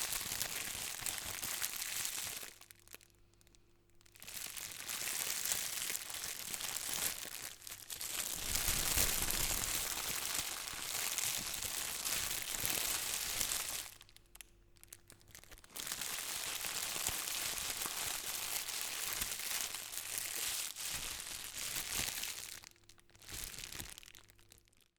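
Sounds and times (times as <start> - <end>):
plastic bag crinkling: 0.0 - 24.9.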